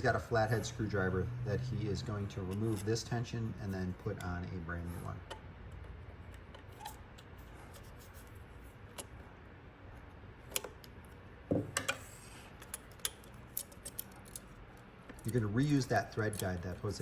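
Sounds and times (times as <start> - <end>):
screwdriver and metal parts clicking: 12.6 - 17.0.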